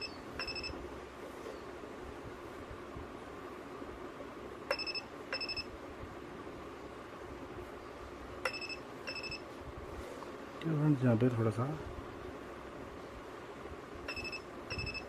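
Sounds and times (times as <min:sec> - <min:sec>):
short high beeps: 0:14.1 - 0:15.0.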